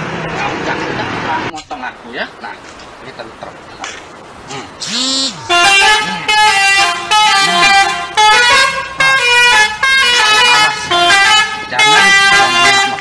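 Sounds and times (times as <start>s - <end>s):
musical bus horn playing a tune: 4.8s - 13.0s.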